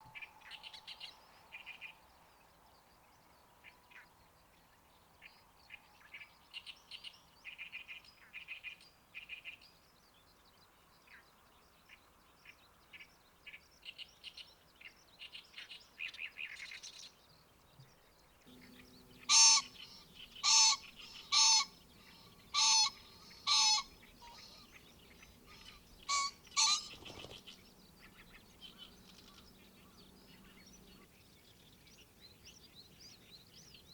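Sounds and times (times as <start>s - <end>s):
birds chirping: 18.4s - 33.9s
loud bird calls: 18.5s - 31.1s.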